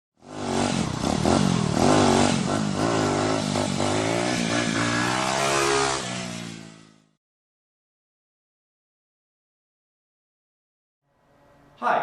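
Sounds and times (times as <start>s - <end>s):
motorcycle engine revving: 0.2s - 7.2s.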